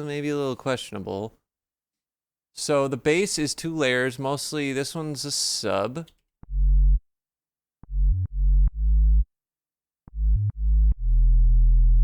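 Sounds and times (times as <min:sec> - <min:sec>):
synthesizer bass line: 0:06.4 - 0:07.0, 0:07.8 - 0:09.3, 0:10.1 - 0:12.0.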